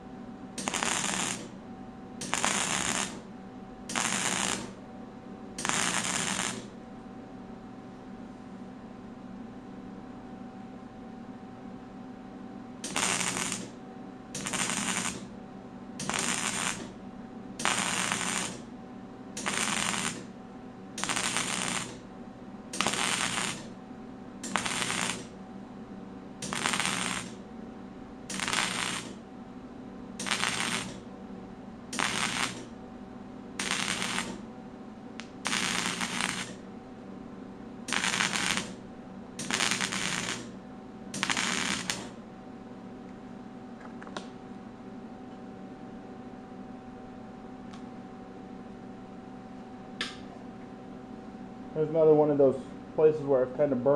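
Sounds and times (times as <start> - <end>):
steady shop hum: 0.0 - 53.9
welder arc crackle: 0.6 - 1.6, 2.2 - 3.3, 3.9 - 4.8, 5.6 - 6.8, 12.8 - 13.8, 14.4 - 15.3, 16.0 - 17.0, 17.6 - 18.7, 19.4 - 20.4, 21.0 - 22.1, 22.7 - 23.8, 24.4 - 25.4, 26.4 - 27.4, 28.3 - 29.2, 30.2 - 31.1, 31.9 - 32.8, 33.6 - 34.5, 35.2 - 36.6, 37.9 - 38.8, 39.4 - 42.2.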